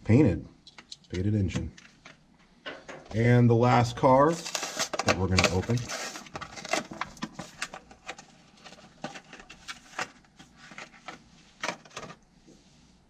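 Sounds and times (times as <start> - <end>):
toy packaging clicks and crinkles: 4.4 - 12.2.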